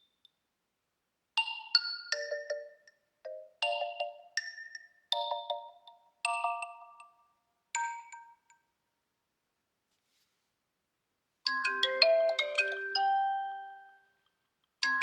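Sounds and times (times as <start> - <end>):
bell-like ringtone chords: 1.8 - 7.1, 11.5 - 14.1
ringtone with quick notes: 11.5 - 14.1.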